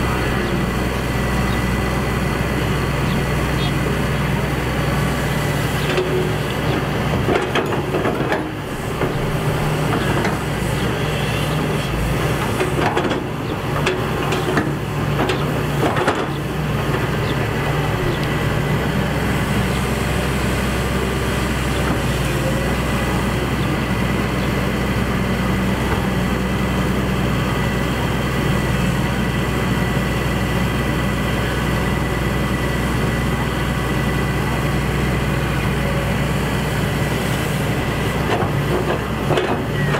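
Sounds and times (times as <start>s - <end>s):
heavy diesel engine running: 0.0s - 39.9s
knocks and clanks: 38.2s - 39.7s.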